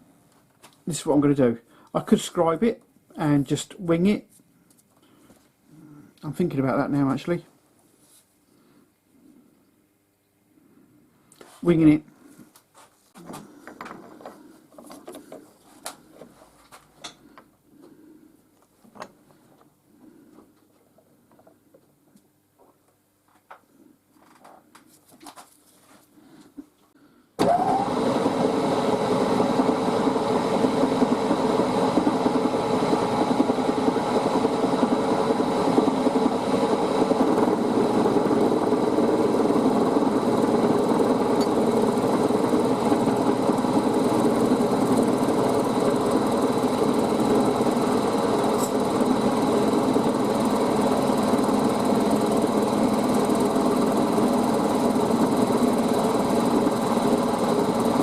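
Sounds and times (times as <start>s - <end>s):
milling machine motor running: 27.4s - 58.0s.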